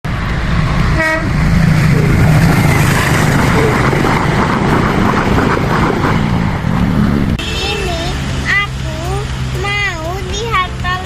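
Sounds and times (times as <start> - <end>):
road traffic rumble: 0.0 - 11.0
vehicle horn toot: 7.4 - 8.0.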